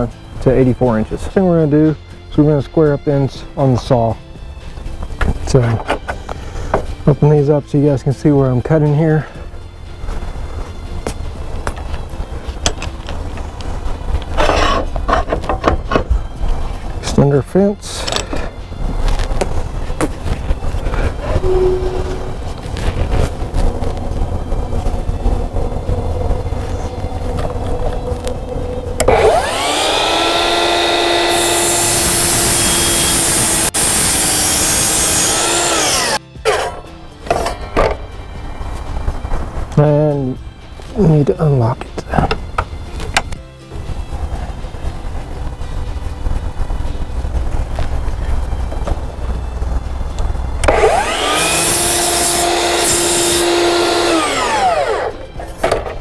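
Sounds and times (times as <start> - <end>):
miter saw motor whine: 29.0 - 36.2, 50.6 - 55.3
saw cutting through wood: 29.0 - 36.8, 50.6 - 55.2.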